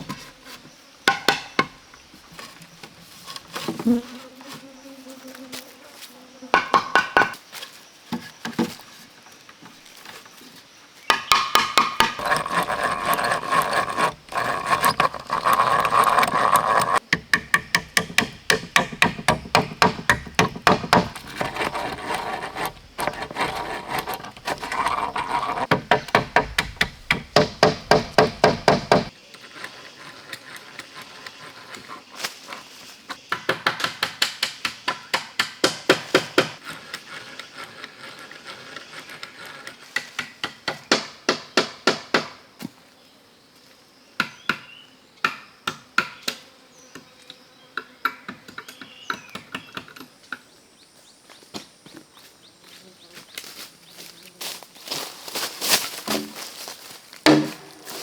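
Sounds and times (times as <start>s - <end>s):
hand tool striking wood: 1.1s - 1.8s, 6.6s - 7.4s, 11.1s - 29.1s, 33.3s - 36.6s, 57.2s - 58.0s.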